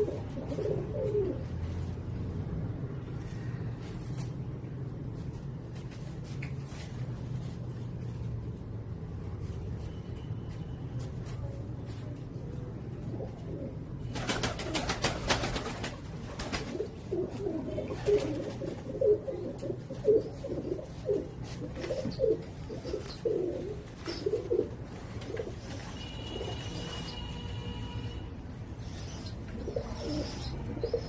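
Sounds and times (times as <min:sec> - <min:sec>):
pigeons cooing: 0:00.0 - 0:01.6, 0:16.4 - 0:25.8, 0:28.9 - 0:31.0.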